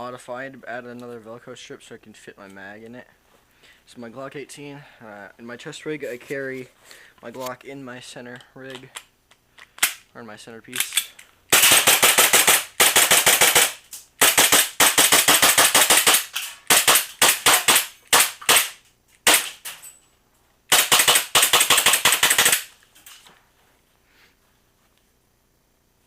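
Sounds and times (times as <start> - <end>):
airsoft gun firing bursts: 11.5 - 19.6, 20.7 - 22.7.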